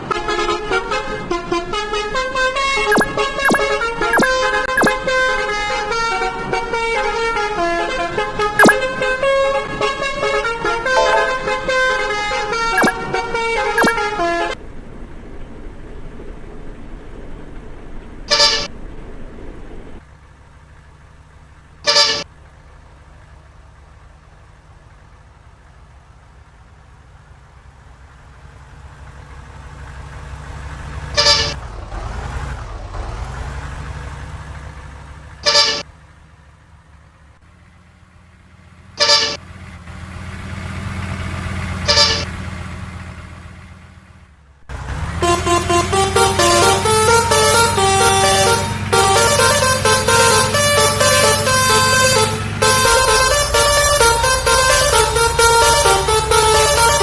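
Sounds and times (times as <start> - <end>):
vehicle horn toots: 0.0 - 14.6, 18.3 - 18.7, 21.8 - 22.3, 31.1 - 31.6, 35.4 - 35.9, 39.0 - 39.4, 41.8 - 42.4, 45.0 - 57.0
vehicle engines passing: 0.0 - 57.0
musical horn tune: 2.9 - 5.0, 8.6 - 9.0, 10.4 - 14.6, 41.9 - 42.3, 45.1 - 57.0.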